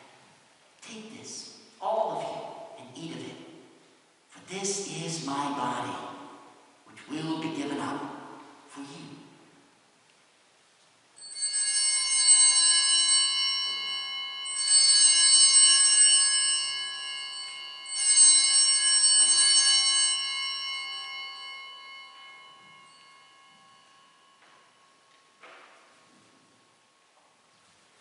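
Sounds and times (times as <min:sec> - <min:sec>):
altar bells ringing: 0:11.1 - 0:27.5.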